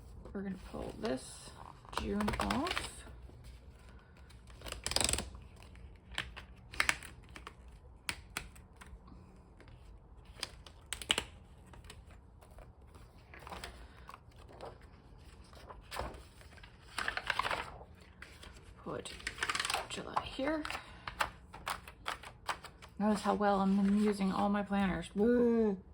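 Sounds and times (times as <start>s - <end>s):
paper rustling: 0.5s - 24.5s
planner pages clicking off discs: 1.9s - 3.0s, 4.2s - 9.0s, 9.6s - 12.6s, 19.1s - 23.0s.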